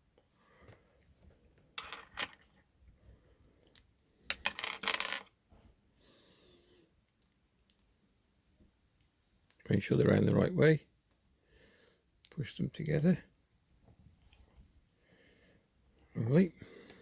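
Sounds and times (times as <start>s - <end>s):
small metal parts clinking: 1.6s - 5.3s.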